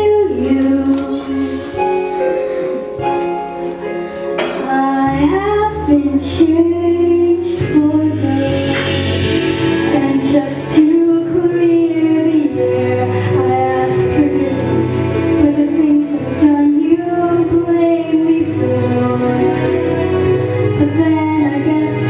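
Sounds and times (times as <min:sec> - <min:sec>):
woman singing a slow ballad: 0:00.0 - 0:01.8
instrumental accompaniment: 0:00.0 - 0:22.0.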